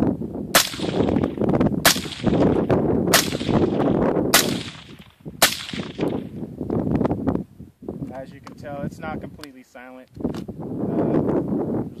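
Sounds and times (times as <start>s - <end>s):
suppressed rifle shots: 0.6s - 6.3s.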